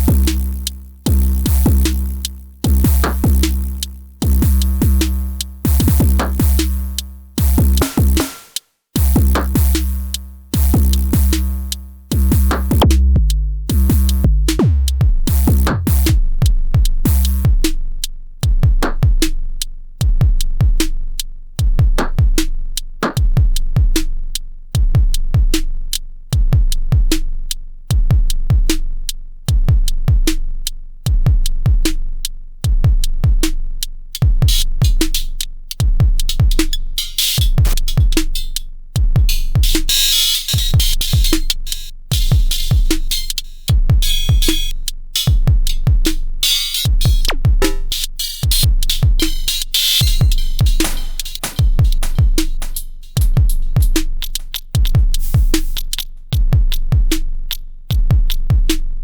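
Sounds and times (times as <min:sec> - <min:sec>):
deep bass tone: 0:00.0 - 0:08.2, 0:09.0 - 0:25.6, 0:32.6 - 0:59.0
hi-hat cymbal wash: 0:00.0 - 0:12.9, 0:33.0 - 0:59.0
electronic drum pattern: 0:00.0 - 0:17.6, 0:34.2 - 0:59.0.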